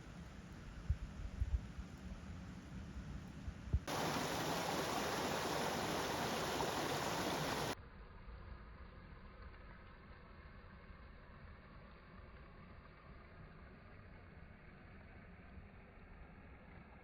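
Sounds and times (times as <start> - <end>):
stream water rushing: 3.9 - 7.8.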